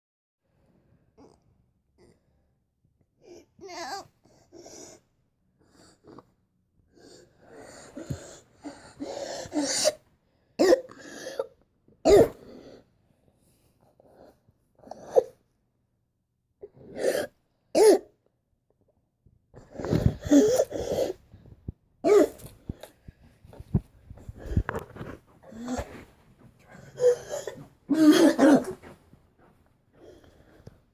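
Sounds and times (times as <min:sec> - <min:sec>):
wheezy breathing: 0:06.9 - 0:10.0, 0:19.6 - 0:29.0, 0:30.0 - 0:30.8
person coughing: 0:12.1 - 0:12.4, 0:17.0 - 0:18.1, 0:22.1 - 0:22.5, 0:26.8 - 0:28.9.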